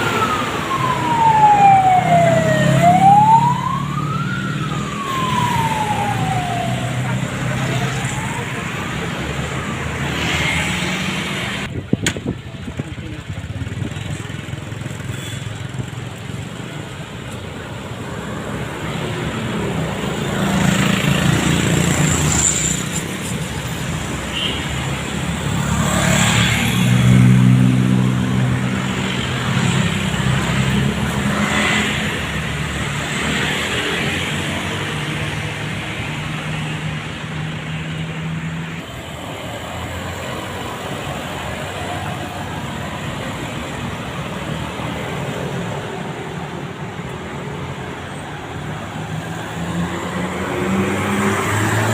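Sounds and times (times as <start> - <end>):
large vehicles passing: 0.0 - 51.9
steady road noise: 0.0 - 51.9.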